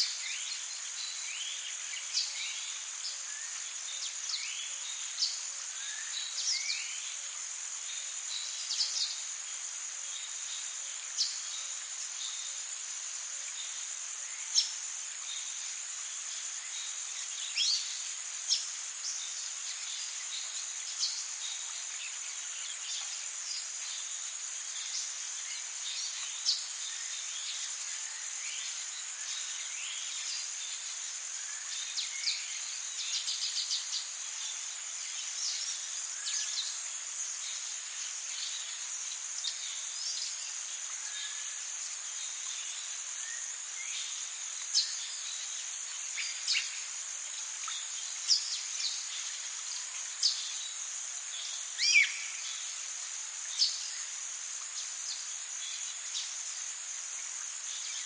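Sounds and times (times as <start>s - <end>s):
insects droning: 0.0s - 58.0s.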